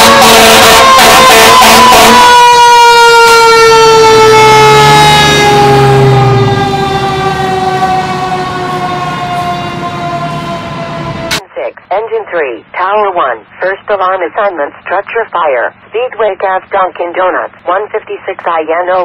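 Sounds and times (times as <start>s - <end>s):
fire engine siren winding down: 0.0s - 11.4s.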